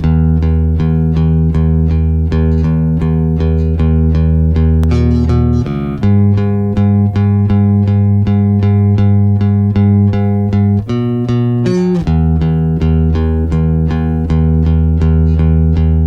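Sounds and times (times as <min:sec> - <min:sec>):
music with plucked notes and bass: 0:00.0 - 0:16.0.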